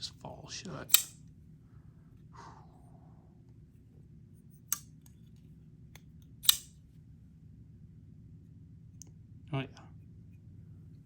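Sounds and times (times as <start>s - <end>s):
folding knife blade clicks: 0.9s - 1.2s, 4.7s - 4.9s, 6.4s - 6.7s.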